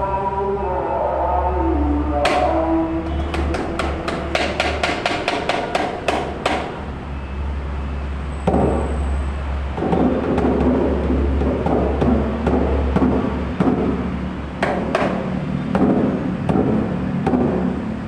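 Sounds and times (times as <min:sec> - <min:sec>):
dull drum beating: 0:02.3 - 0:06.7, 0:09.8 - 0:17.8
wooden drum sharp knocks: 0:03.1 - 0:06.8, 0:09.8 - 0:14.0, 0:14.6 - 0:17.7.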